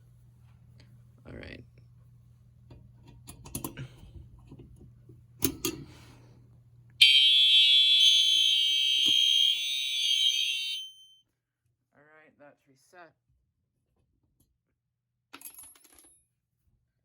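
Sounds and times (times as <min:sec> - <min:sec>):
fire alarm horns: 0:07.0 - 0:11.2.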